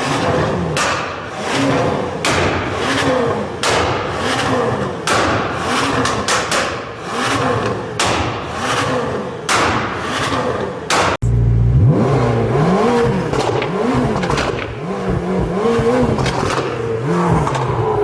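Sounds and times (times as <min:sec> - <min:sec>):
car engine revving: 0:00.0 - 0:18.0
exhaust pops and crackles: 0:11.2 - 0:18.0.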